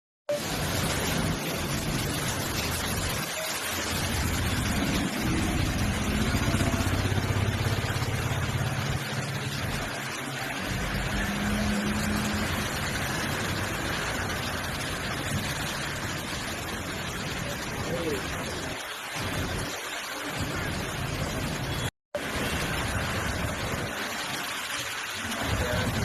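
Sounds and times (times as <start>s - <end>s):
heavy rain hissing: 0.4s - 26.0s
vehicle engine humming: 4.0s - 15.6s.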